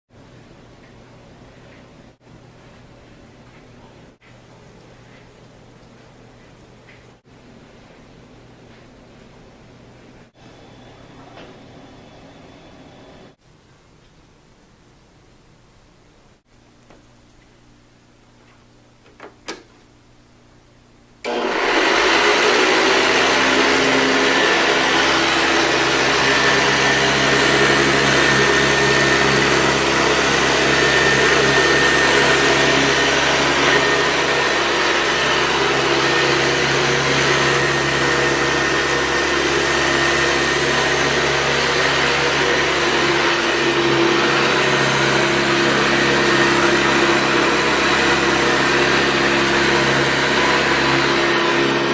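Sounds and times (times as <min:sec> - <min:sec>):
vacuum cleaner running: 0:10.3 - 0:13.4, 0:21.2 - 0:51.9.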